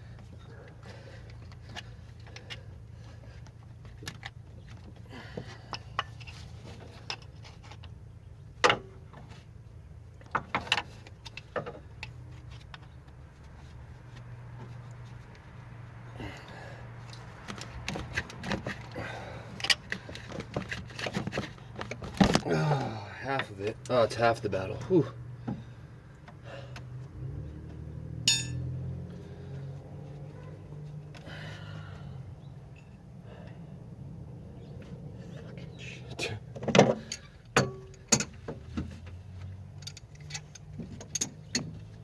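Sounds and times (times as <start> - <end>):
hand tools clinking on metal: 28.3 - 28.8.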